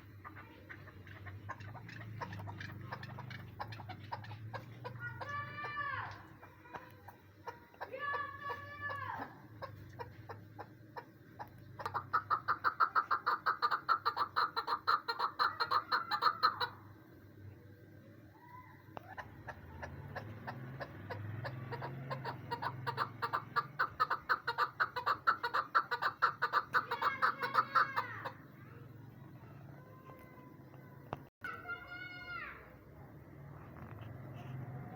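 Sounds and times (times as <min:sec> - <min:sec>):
partridge rapid clucking: 0:00.0 - 0:17.3, 0:19.0 - 0:28.5.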